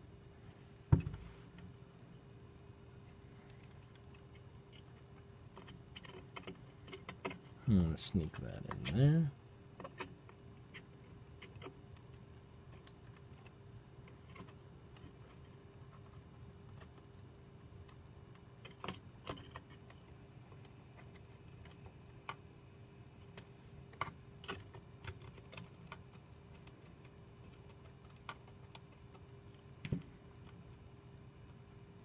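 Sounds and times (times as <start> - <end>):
faint steady hum: 0.0 - 32.0
small clicks and taps of parts: 3.4 - 7.6, 23.2 - 31.6.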